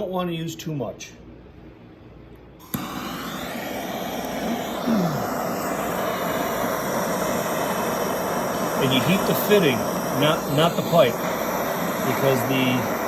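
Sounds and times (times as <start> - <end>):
gas torch flame hissing: 2.6 - 13.0
torch lighter click: 2.6 - 13.0.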